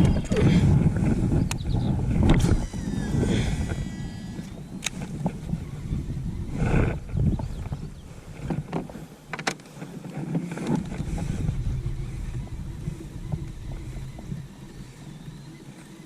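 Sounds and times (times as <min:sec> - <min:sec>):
wind buffeting microphone: 0:00.0 - 0:16.0
sharp clicks: 0:01.4 - 0:05.6.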